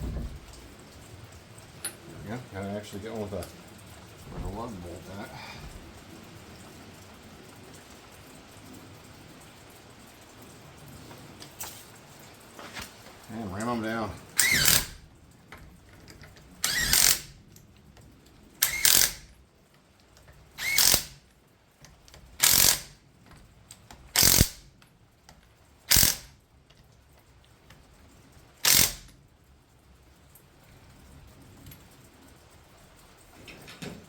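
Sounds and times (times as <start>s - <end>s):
power wrench bursts: 14.4s - 15.0s, 16.6s - 17.4s, 18.6s - 19.3s, 20.6s - 21.2s, 22.4s - 23.0s, 24.2s - 24.6s, 25.9s - 26.3s, 28.6s - 29.1s.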